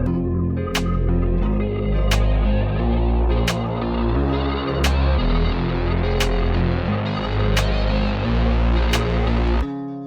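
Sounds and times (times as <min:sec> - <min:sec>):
electronic music: 0:00.0 - 0:09.6
sharp percussive hit: 0:00.8 - 0:01.0, 0:02.1 - 0:02.4, 0:03.5 - 0:03.7.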